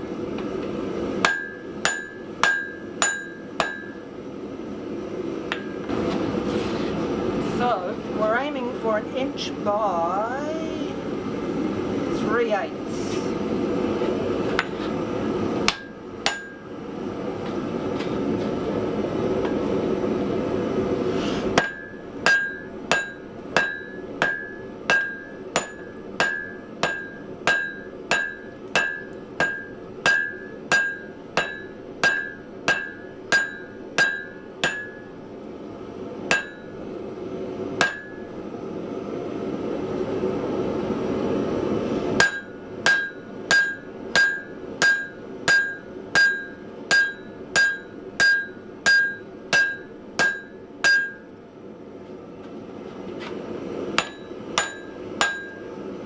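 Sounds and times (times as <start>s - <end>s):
hammer ringing on anvil: 1.2s - 4.1s, 5.5s - 5.9s, 15.7s - 16.7s, 21.6s - 35.2s, 36.3s - 36.8s, 37.8s - 38.4s, 42.2s - 51.4s, 54.0s - 55.8s.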